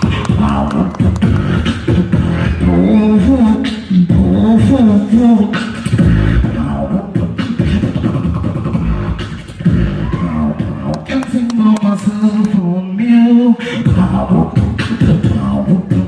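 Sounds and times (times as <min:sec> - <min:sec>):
beatboxing mouth clicks and thumps: 0:00.0 - 0:02.5, 0:05.4 - 0:12.7, 0:13.8 - 0:16.0.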